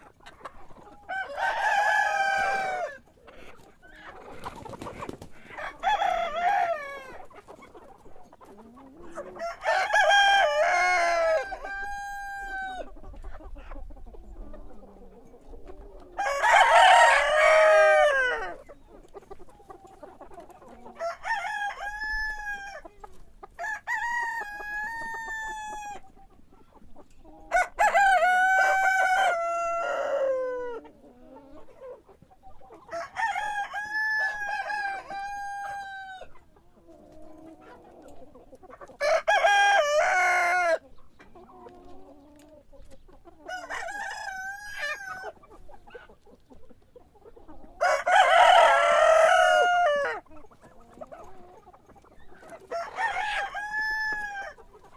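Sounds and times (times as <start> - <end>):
hens clucking: 0.0 - 54.9
roosters crowing: 1.0 - 3.1, 4.0 - 7.4, 9.1 - 13.0, 16.0 - 18.6, 20.8 - 22.8, 23.5 - 26.0, 27.5 - 30.9, 32.8 - 36.4, 39.0 - 40.8, 43.4 - 45.4, 47.8 - 50.4, 52.4 - 54.7.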